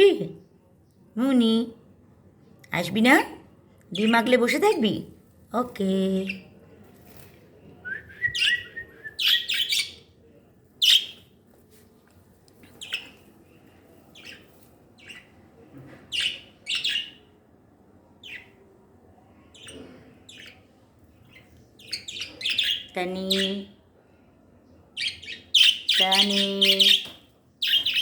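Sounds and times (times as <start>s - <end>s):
small pet birds chirping: 3.9s - 5.1s, 8.2s - 10.1s, 10.8s - 11.4s, 12.6s - 17.4s, 18.1s - 18.8s, 19.4s - 23.8s, 24.9s - 28.0s.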